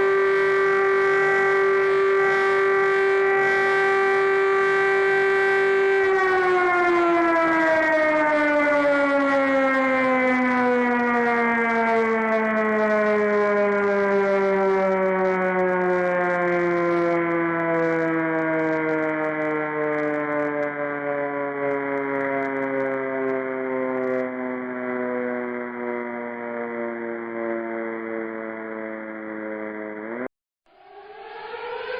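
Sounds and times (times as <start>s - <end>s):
siren winding down: 0.0s - 31.9s.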